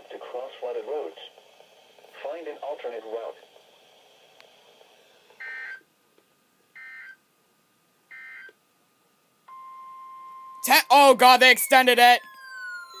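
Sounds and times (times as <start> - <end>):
steady beep tone: 9.5 - 13.0
buzzy digital bursts: 10.7 - 13.0.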